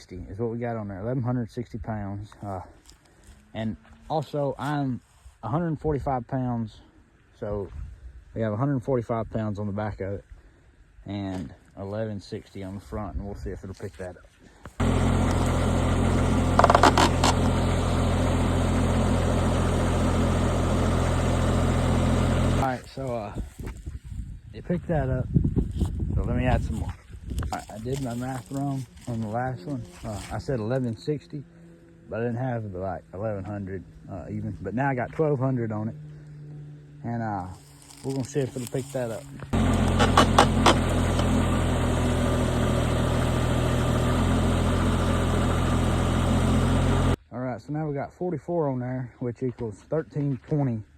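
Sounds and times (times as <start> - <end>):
diesel engine running: 14.8 - 23.1, 28.2 - 47.2.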